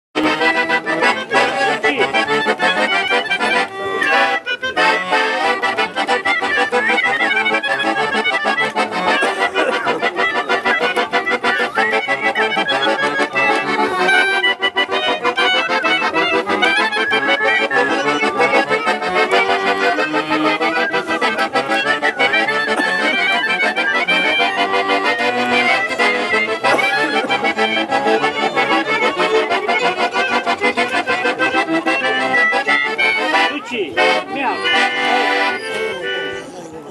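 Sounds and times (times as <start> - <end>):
accordion playing lively tune: 0.2 - 36.9.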